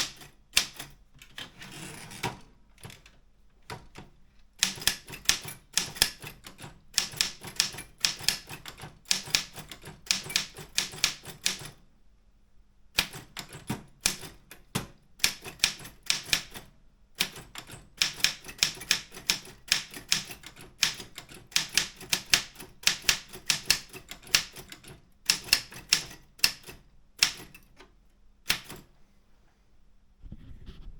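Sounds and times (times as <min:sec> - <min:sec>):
typewriter clacking: 0:00.0 - 0:01.0, 0:04.6 - 0:11.8, 0:13.0 - 0:27.7, 0:28.5 - 0:28.9.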